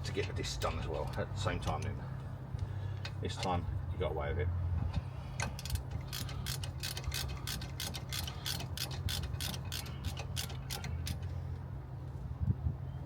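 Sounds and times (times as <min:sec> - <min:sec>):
ratchet wrench clicking: 0:05.4 - 0:11.3.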